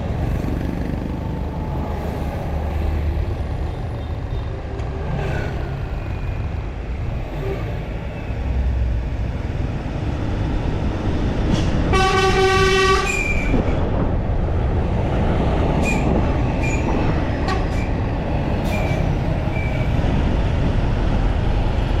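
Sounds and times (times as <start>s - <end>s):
vehicle and traffic rumble: 0.0s - 22.0s
car horn blast: 11.9s - 13.1s.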